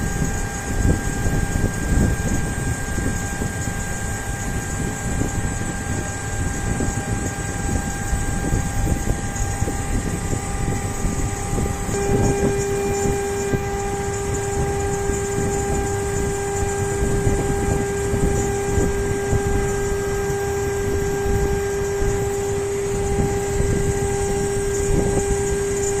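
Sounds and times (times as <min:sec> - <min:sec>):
low steady tone: 0:00.0 - 0:26.0
machine motor whine: 0:00.0 - 0:26.0.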